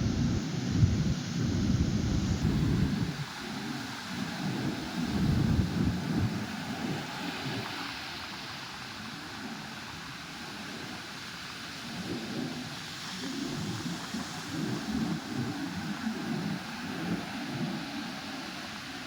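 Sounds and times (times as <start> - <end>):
wind buffeting microphone: 0.0 - 3.3.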